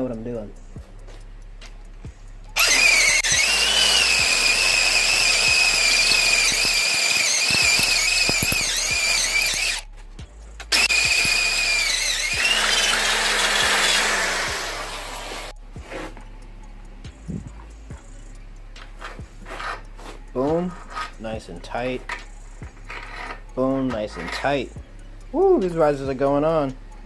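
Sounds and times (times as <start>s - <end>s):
power drill squealing through metal: 2.6s - 9.8s, 10.7s - 15.5s, 21.9s - 24.7s.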